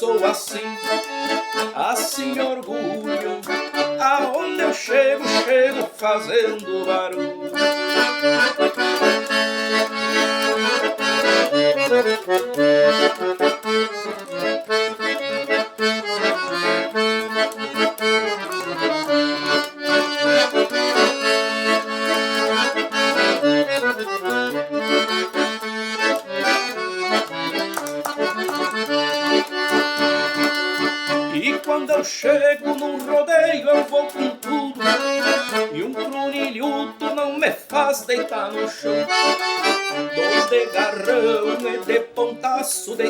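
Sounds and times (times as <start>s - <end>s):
bouncing bass rhythm: 0.0s - 32.0s, 32.6s - 42.3s
accordion melodic runs: 0.0s - 43.0s.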